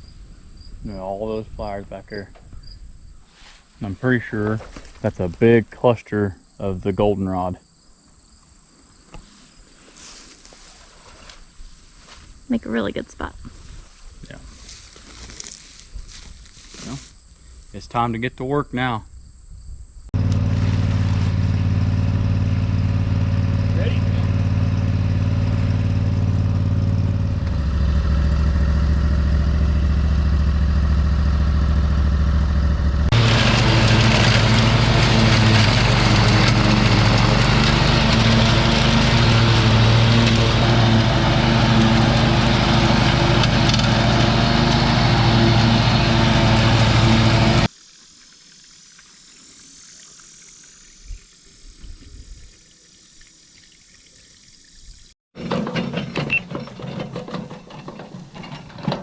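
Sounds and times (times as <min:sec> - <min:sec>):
engine running: 0:20.2 - 0:47.7.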